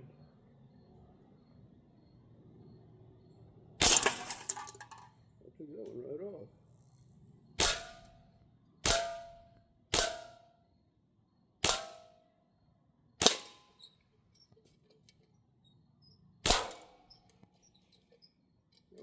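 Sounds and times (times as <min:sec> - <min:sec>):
bb rifle shots: 0:03.8 - 0:04.9, 0:07.6 - 0:08.2, 0:08.8 - 0:10.4, 0:11.6 - 0:12.1, 0:13.2 - 0:13.7, 0:16.4 - 0:17.0
metallic ring: 0:07.6 - 0:10.5.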